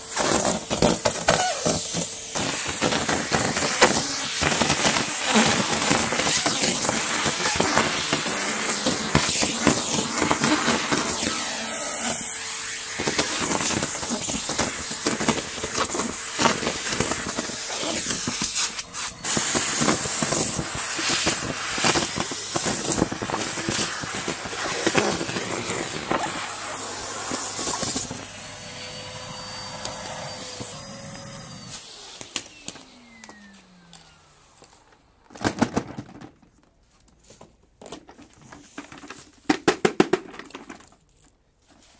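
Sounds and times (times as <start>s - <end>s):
leaves and grit rattling up hose: 0.0s - 28.2s
vacuum cleaner motor whine: 0.0s - 35.2s.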